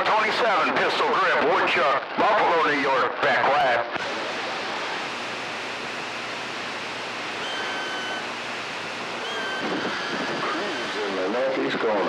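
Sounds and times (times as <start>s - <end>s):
radio static hiss: 0.1s - 12.0s
faint whistling tone: 7.4s - 8.3s, 9.2s - 11.0s.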